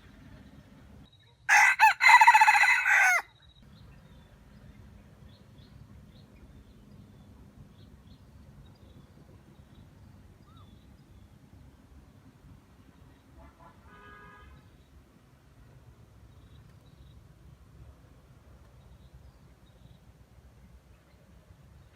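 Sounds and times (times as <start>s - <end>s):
rooster crowing: 1.5s - 3.3s.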